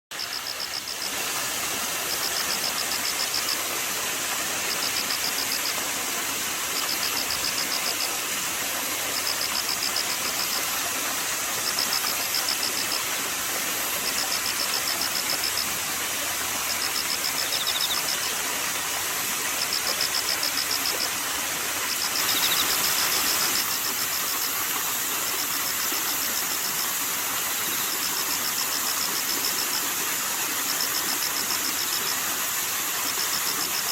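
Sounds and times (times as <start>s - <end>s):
insects chirping in trills: 0.1s - 18.8s, 19.4s - 33.9s
flowing water rushing: 0.1s - 33.9s.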